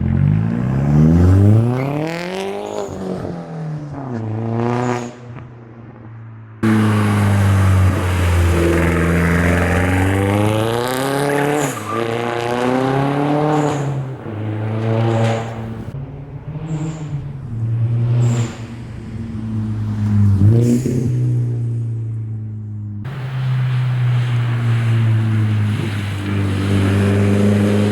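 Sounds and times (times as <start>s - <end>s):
car exhaust revving: 6.6s - 27.9s.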